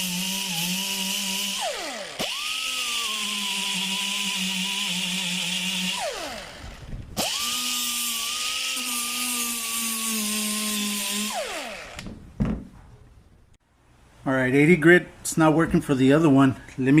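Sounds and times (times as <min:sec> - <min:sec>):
air die grinder whining: 0:00.0 - 0:12.1.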